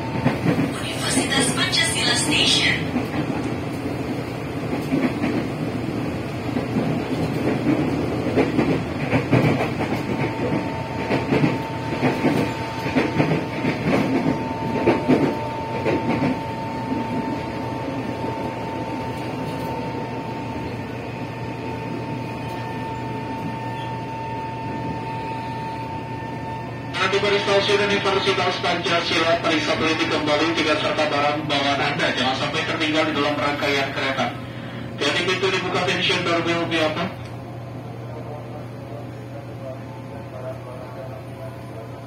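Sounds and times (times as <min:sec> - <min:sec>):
train wheels clacking over rail joints: 0:06.6 - 0:16.4.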